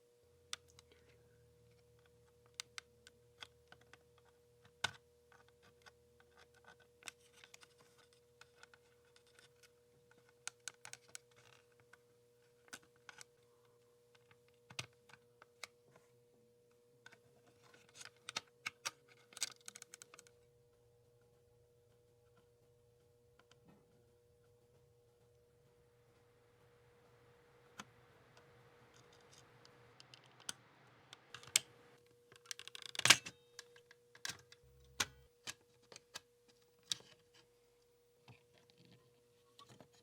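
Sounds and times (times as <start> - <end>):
faint steady tone: 0.0 - 18.0, 20.0 - 32.5
clicks and taps of small parts: 32.3 - 36.2.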